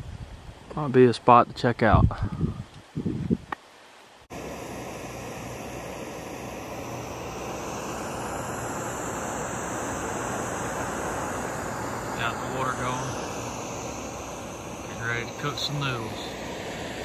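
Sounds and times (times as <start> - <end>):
camp stove burner hissing: 4.2 - 17.0.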